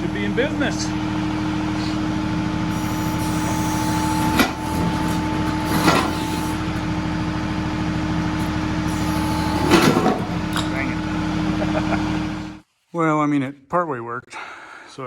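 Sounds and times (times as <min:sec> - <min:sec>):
tractor diesel engine running: 0:00.0 - 0:12.6.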